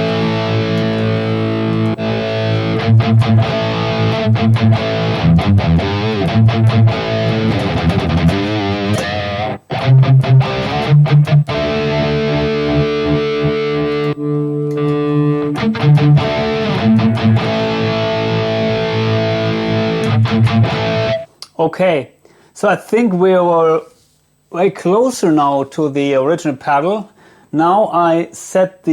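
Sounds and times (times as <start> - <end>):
distorted electric guitar riff: 0.0 - 21.3.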